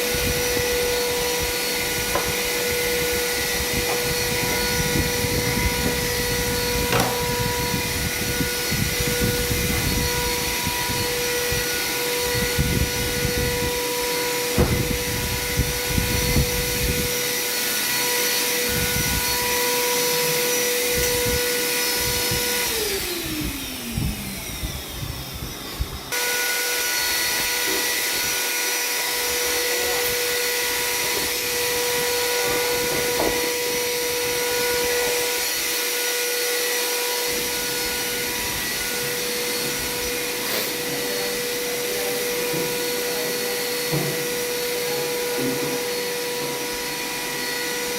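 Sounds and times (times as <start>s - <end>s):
power tool motor whining: 0.0s - 47.9s.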